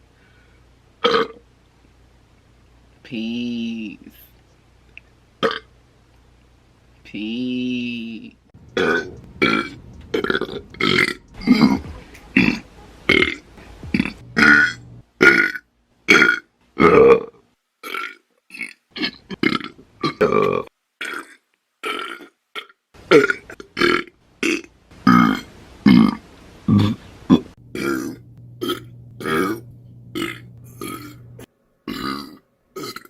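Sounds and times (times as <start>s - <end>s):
woman burping: 8.8s - 11.8s, 14.0s - 33.0s.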